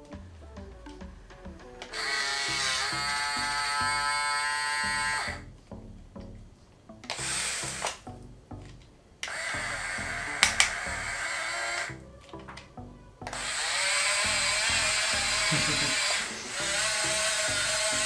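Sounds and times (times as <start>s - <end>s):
background music with beat: 0.0s - 2.2s
toy electric motor whining: 0.0s - 5.5s, 7.1s - 8.1s, 9.2s - 12.7s, 13.3s - 18.0s
sharp clicks: 0.0s - 18.0s.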